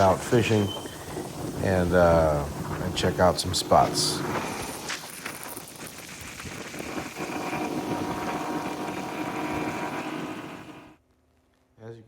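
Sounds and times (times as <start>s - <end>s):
wind: 0.0s - 9.8s
water noise: 0.0s - 11.0s
motorboat engine running: 6.6s - 11.0s.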